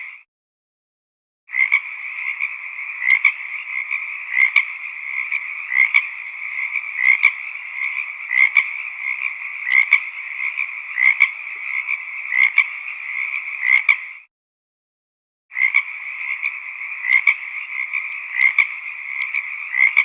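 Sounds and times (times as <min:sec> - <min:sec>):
frogs croaking: 0:00.0 - 0:00.2, 0:01.5 - 0:14.3, 0:15.5 - 0:20.0.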